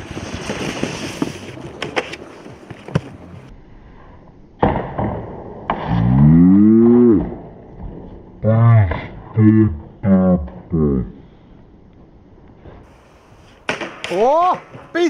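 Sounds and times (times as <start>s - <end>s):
thumps: 0.0s - 3.5s
person yelling: 14.1s - 15.0s.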